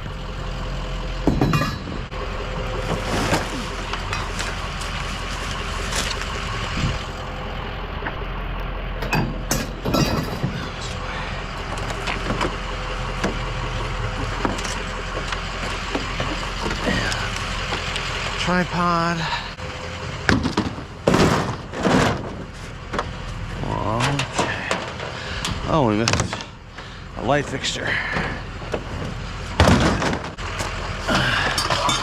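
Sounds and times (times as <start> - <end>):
vehicle engine idling: 0.0 - 32.0
scrap metal knocks and clanks: 1.2 - 7.0, 9.0 - 11.0, 20.2 - 23.4, 24.0 - 27.4, 28.0 - 30.8, 31.4 - 32.0.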